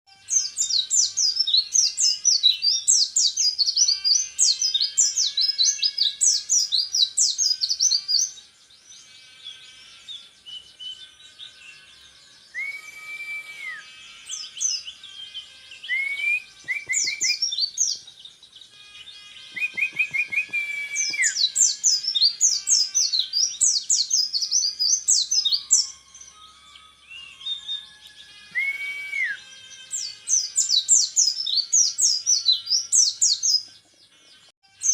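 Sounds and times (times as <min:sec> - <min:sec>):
short held bird whistles: 0:12.6 - 0:14.0, 0:15.9 - 0:17.4, 0:19.6 - 0:21.6, 0:28.5 - 0:29.5.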